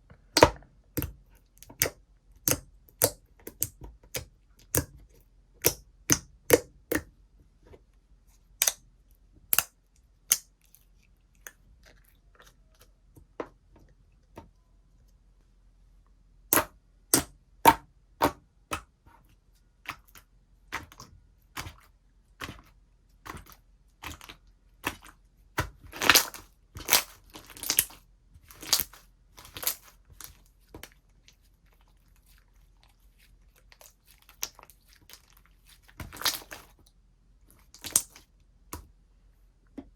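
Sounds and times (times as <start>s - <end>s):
slime popping and squishing: 5.6s - 7.1s, 23.3s - 30.4s, 35.9s - 36.8s, 37.6s - 38.2s.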